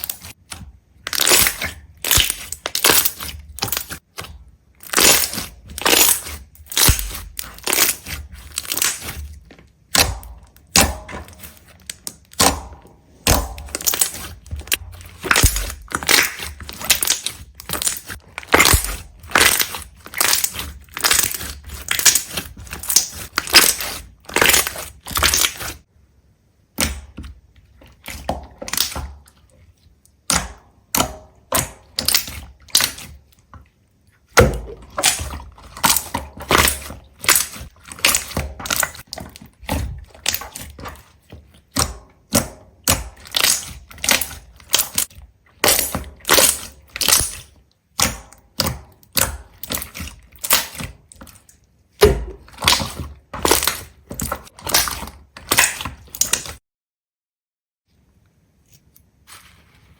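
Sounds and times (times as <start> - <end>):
brittle crunches and cracks: 0.0 - 12.6, 13.3 - 25.8, 34.3 - 56.6.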